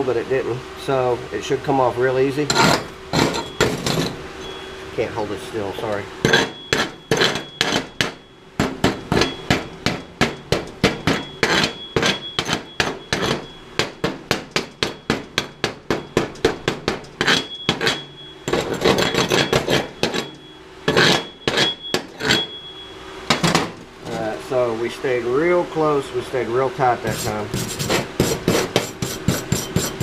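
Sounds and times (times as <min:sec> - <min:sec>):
chipping hammer striking steel: 0:06.2 - 0:22.5.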